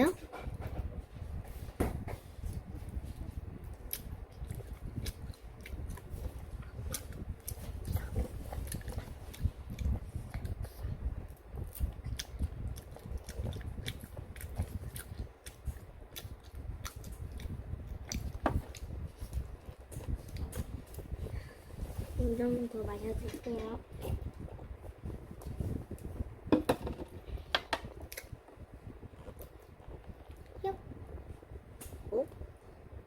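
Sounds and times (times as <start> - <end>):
person chewing food: 3.7 - 21.1.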